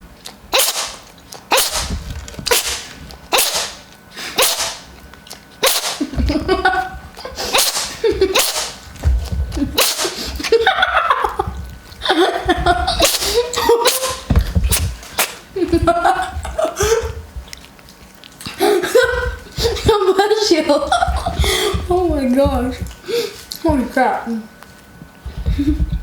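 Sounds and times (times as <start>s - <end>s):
cat sneezing: 0.5s - 4.9s, 5.6s - 6.2s, 7.4s - 8.8s, 9.8s - 10.4s, 13.0s - 15.4s
voice: 18.9s - 22.9s, 23.6s - 24.5s.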